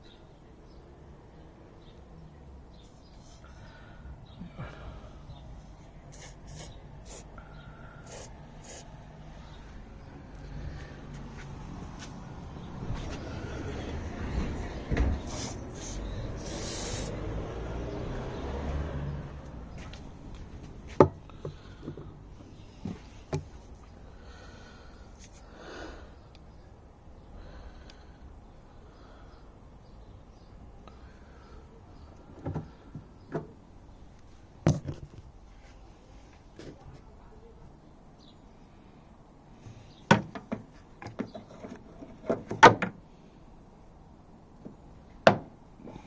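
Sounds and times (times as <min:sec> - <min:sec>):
short breathy noise: 0:02.9 - 0:11.5, 0:15.2 - 0:17.9.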